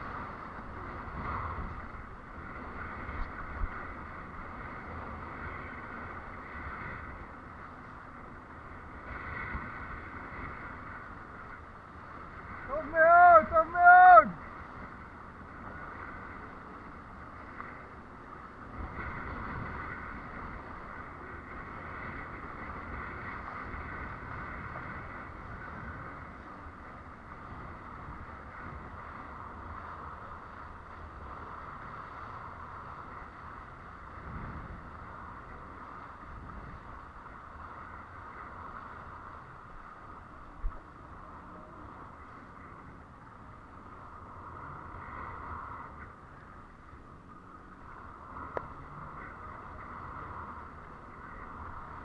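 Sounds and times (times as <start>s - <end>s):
rushing water: 0.0s - 52.0s.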